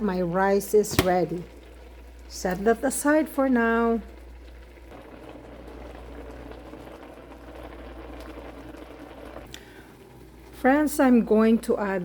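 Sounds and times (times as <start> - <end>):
pot of water bubbling: 0.0 - 12.0.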